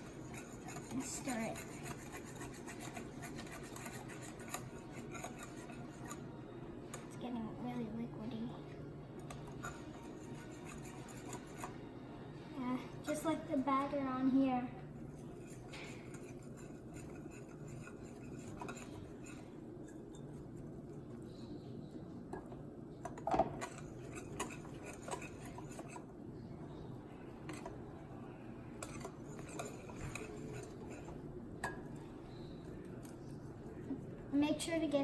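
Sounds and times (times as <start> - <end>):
whisk stirring batter: 0.0 - 7.0, 9.3 - 11.8, 15.0 - 21.3, 23.5 - 26.2, 28.7 - 35.0.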